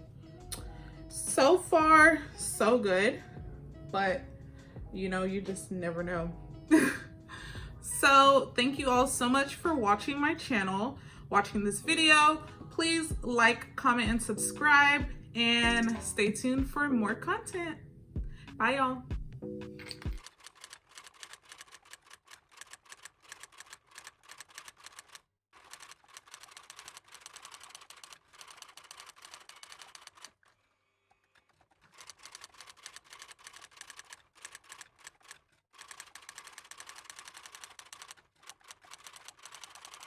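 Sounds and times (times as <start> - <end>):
faint keyboard typing clicks: 19.8 - 30.4, 31.3 - 40.0.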